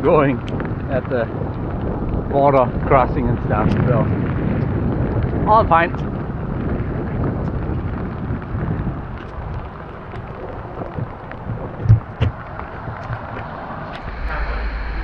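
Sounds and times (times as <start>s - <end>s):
wind and rain on microphone: 0.0s - 15.0s
low knocks: 7.7s - 14.6s.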